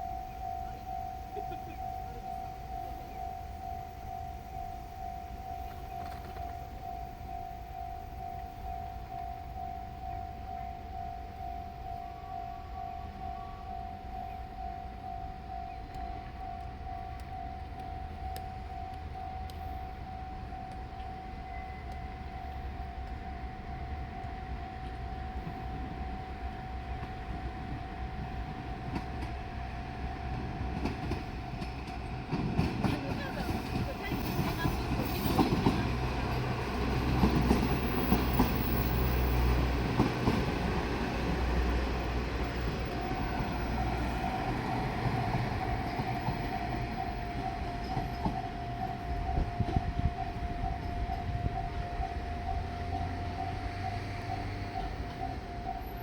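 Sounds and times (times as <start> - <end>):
steady high-pitched tone: 0.0 - 30.4
diesel railcar engine rumble: 0.0 - 56.0
level crossing warning bell: 0.0 - 56.0.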